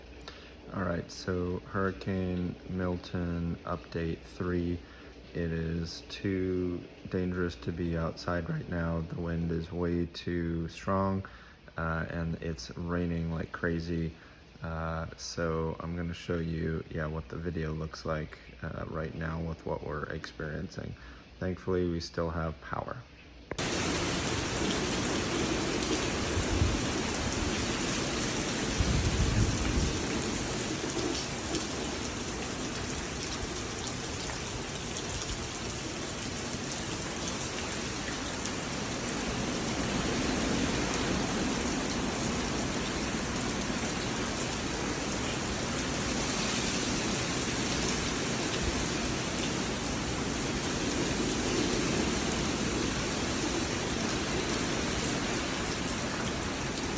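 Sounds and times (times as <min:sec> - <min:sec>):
heavy rain pouring: 0:00.0 - 0:18.2, 0:23.5 - 0:56.9
strong wind: 0:23.6 - 0:34.7.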